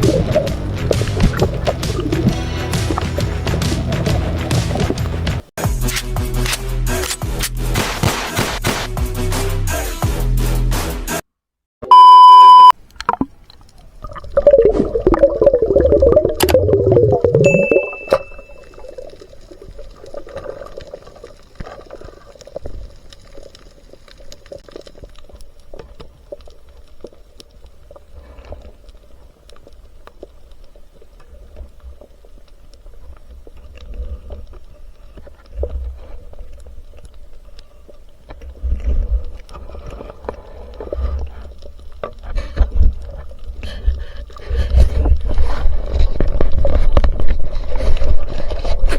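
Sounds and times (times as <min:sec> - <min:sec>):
low rumbling: 0:00.0 - 0:05.5
muffled water movement: 0:00.0 - 0:05.5, 0:11.9 - 0:48.9.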